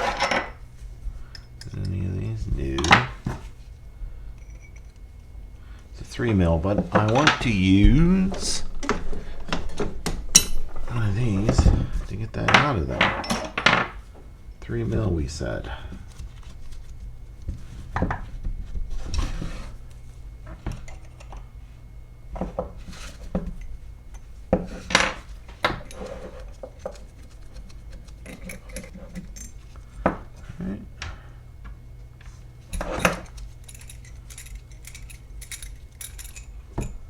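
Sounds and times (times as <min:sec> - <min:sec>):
small metal parts clinking: 0:25.8 - 0:29.8, 0:32.7 - 0:37.0.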